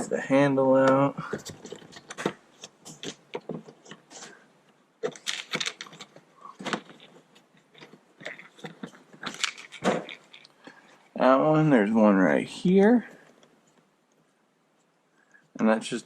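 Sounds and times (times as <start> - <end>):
plastic door parts rattling: 5.0 - 10.7.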